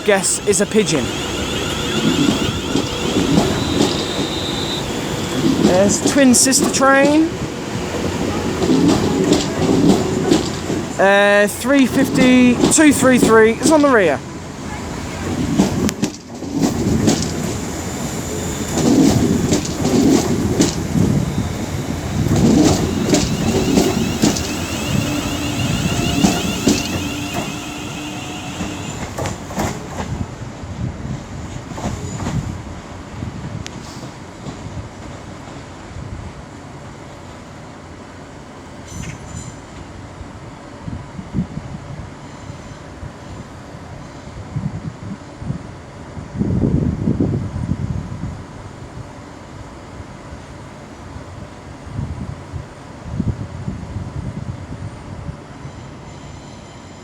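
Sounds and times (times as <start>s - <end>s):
train wheels clicking over rail joints: 0.0s - 11.0s, 11.7s - 14.0s, 15.2s - 30.2s
electric train running: 0.0s - 30.4s.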